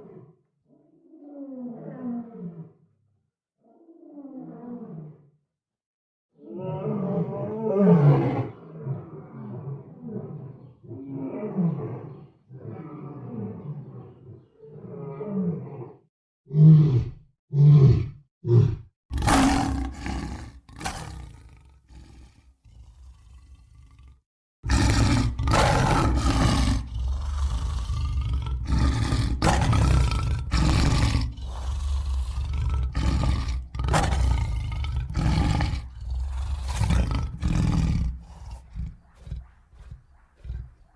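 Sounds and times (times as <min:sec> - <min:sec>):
lion growling and roaring: 0:06.4 - 0:40.9.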